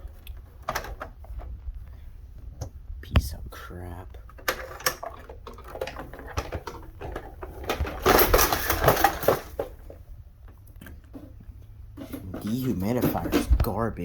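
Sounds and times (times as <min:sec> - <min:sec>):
dehumidifier parts clattering: 0:00.0 - 0:03.3, 0:04.2 - 0:14.0
loud rattling: 0:04.3 - 0:09.8.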